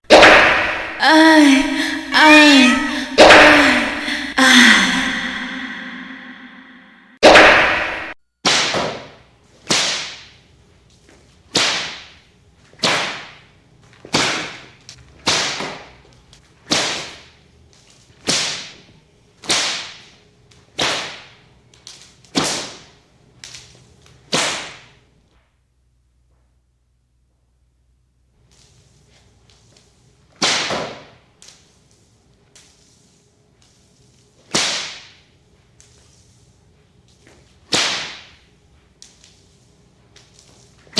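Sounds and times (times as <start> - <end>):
whip cracking: 7.2 - 8.9, 30.4 - 30.9, 34.5 - 35.0, 37.7 - 38.3.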